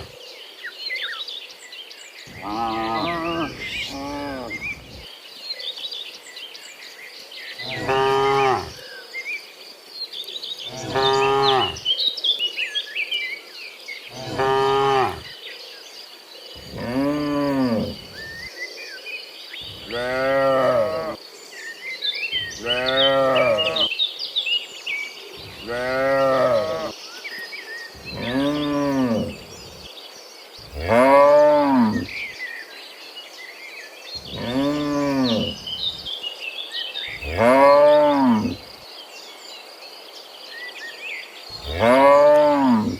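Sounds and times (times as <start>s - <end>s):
cattle mooing: 2.3s - 5.0s, 10.7s - 11.8s, 16.6s - 18.4s, 19.7s - 21.2s, 22.4s - 23.9s, 25.4s - 26.9s, 28.0s - 29.8s, 30.7s - 32.2s, 34.2s - 36.1s, 37.2s - 38.6s, 41.6s - 42.9s
bird chirps: 19.5s - 32.8s, 33.4s - 38.7s
high insect trill: 27.8s - 32.9s, 34.1s - 39.0s.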